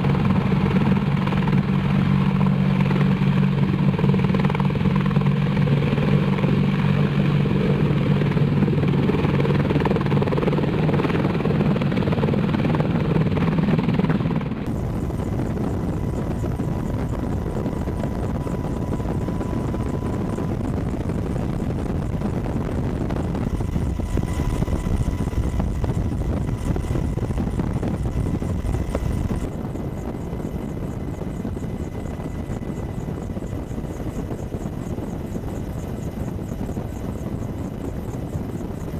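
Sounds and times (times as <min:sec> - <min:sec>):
helicopter rotor and engine: 0:00.0 - 0:38.9.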